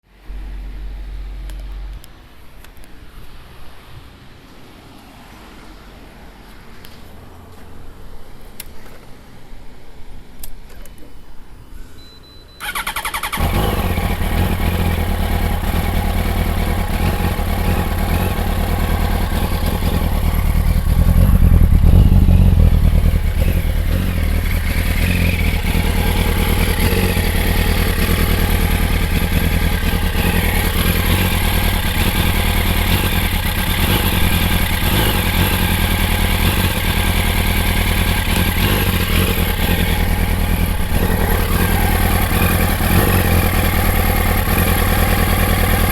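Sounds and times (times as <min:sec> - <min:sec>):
motorcycle engine starting and idling: 0:12.6 - 0:45.9.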